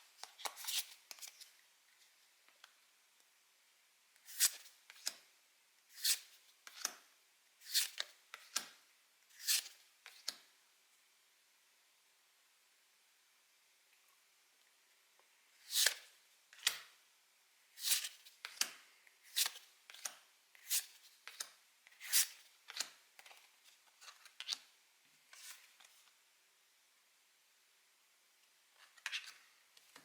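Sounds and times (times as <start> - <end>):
trading cards flipping: 0.2 - 1.5, 17.8 - 24.6.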